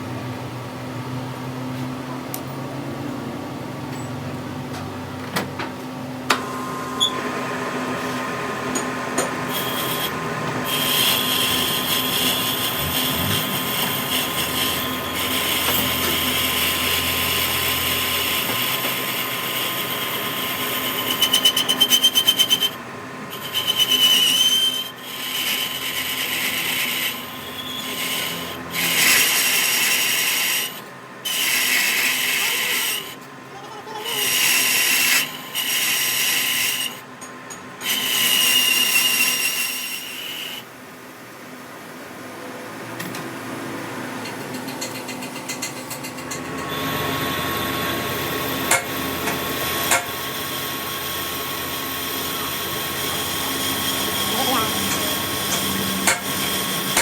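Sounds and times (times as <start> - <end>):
power tool running: 6.3 - 33.3, 33.9 - 40.7, 46.1 - 57.0.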